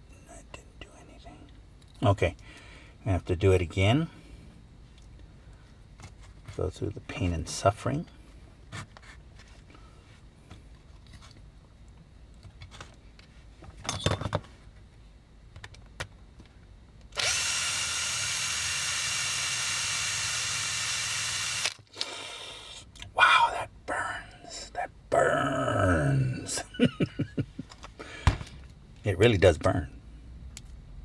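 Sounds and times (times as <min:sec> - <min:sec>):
small power drill whining: 0:17.2 - 0:22.8.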